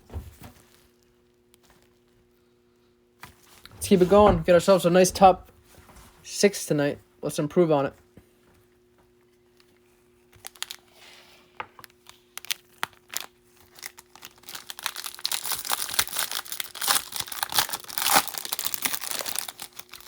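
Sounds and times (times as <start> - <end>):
wrapper tearing and crinkling: 10.3 - 10.8, 11.9 - 20.0.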